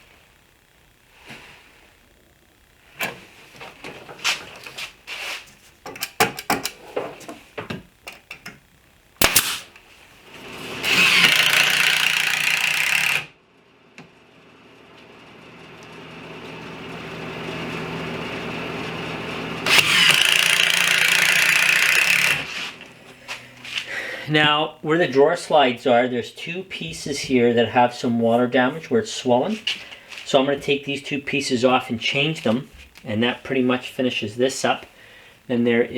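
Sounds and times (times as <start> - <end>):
power tool running: 9.2 - 13.4, 16.4 - 24.2.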